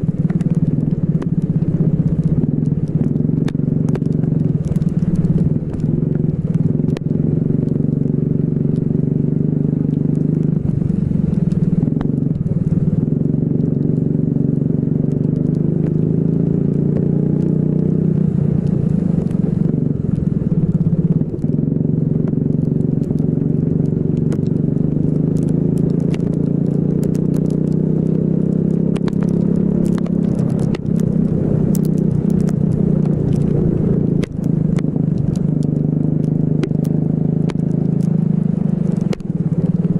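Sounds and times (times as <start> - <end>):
sharp ticks: 0.1 - 7.9, 8.7 - 8.9, 22.2 - 39.9.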